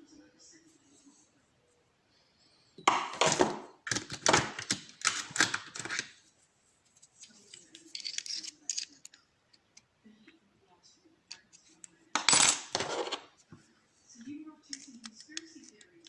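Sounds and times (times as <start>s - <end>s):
metal lock parts rattling: 7.9s - 9.2s.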